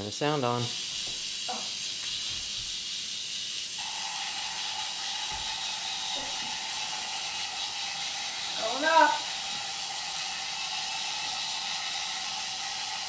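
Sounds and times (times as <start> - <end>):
steady hiss: 0.0 - 13.0
electric chain-lift motor whine: 2.9 - 13.0.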